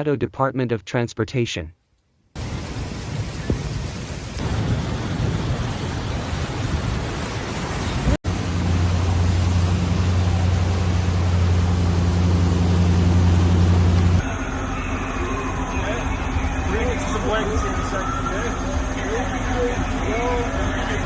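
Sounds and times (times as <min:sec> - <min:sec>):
heavy rain hissing: 0:02.4 - 0:14.2.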